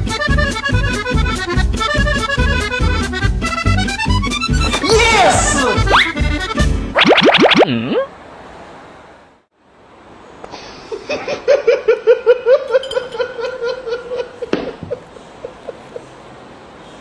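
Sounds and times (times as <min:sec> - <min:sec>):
person laughing: 0:04.6 - 0:06.1.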